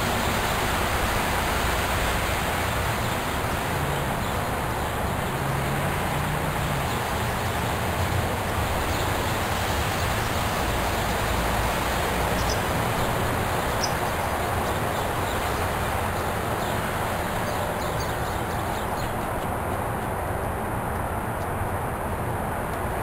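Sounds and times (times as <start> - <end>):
rushing outdoor background noise: 0.0 - 23.0
bird chirps: 12.3 - 16.8, 17.4 - 19.3.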